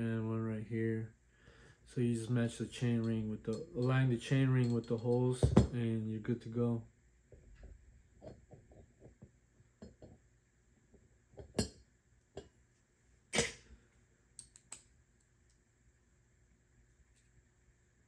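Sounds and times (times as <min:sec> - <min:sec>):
metallic clicks and taps: 0:14.4 - 0:14.9.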